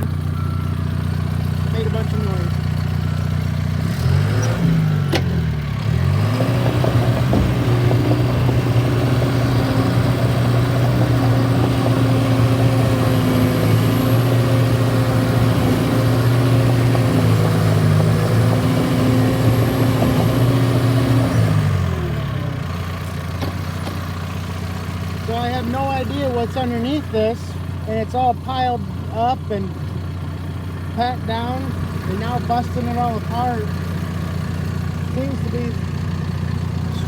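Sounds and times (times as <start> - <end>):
dozer diesel engine working hard: 0.0 - 37.0.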